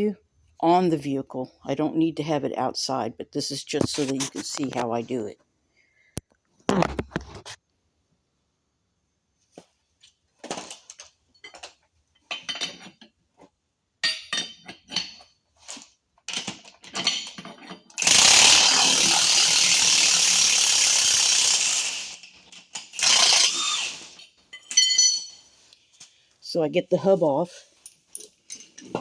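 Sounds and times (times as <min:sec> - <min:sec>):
metal tools clinking: 0:10.4 - 0:13.1, 0:14.0 - 0:18.2, 0:21.9 - 0:25.5, 0:27.7 - 0:29.0
power tool running: 0:18.0 - 0:22.2, 0:23.0 - 0:24.2.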